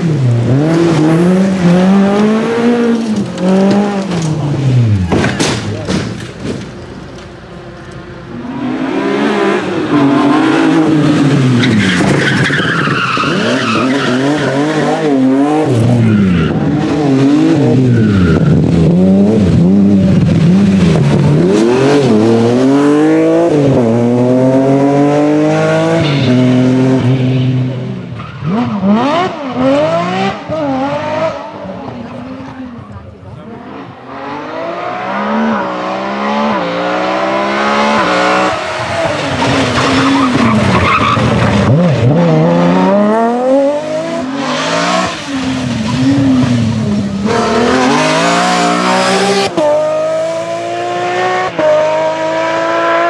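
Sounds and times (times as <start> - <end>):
rally car engine revving: 0.0 - 53.0.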